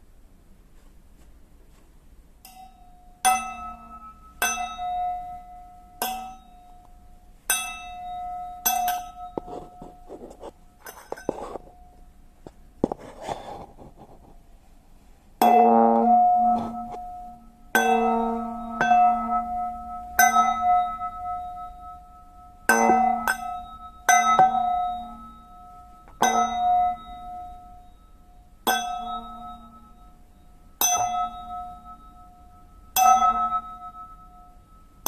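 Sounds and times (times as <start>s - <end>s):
metal spoon ringing like bell: 2.5s - 6.8s, 7.5s - 9.4s, 17.0s - 35.0s
rough scraping and rustling: 9.4s - 11.8s, 12.4s - 14.5s.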